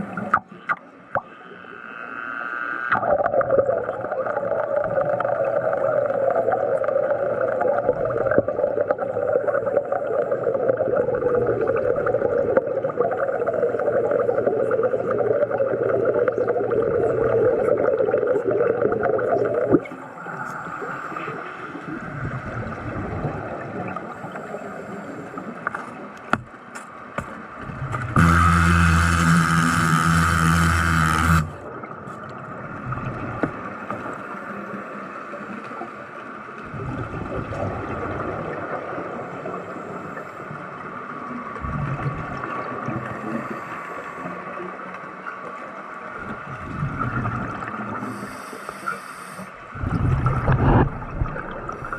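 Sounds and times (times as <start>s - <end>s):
underwater bubbling: 0.0s - 51.9s
underwater gurgling: 0.0s - 51.9s
loud buzz: 28.0s - 31.6s.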